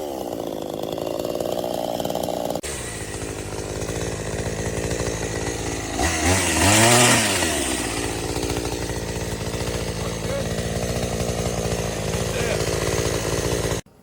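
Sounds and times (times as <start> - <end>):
chainsaw idling and revving: 0.0 - 14.0.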